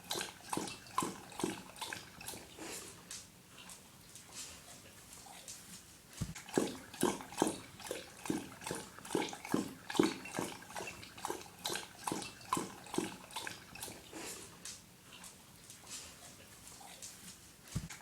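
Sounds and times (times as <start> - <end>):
dog lapping water from bowl: 0.0 - 3.1, 6.3 - 15.3.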